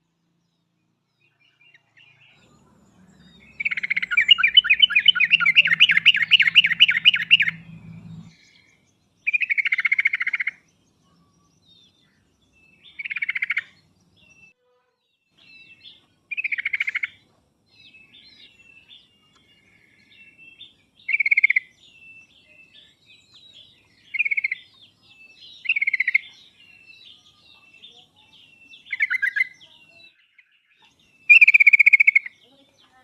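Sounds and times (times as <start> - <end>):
bulbul chattering song: 1.2 - 14.5, 15.4 - 33.0
soft bird warbling: 3.1 - 8.3.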